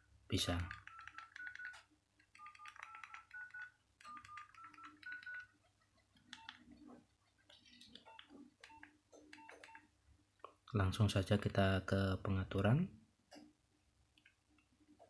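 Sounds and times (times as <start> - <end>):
key beeps: 0.6 - 5.6, 8.0 - 9.9
keypad key clicks: 2.3 - 5.5.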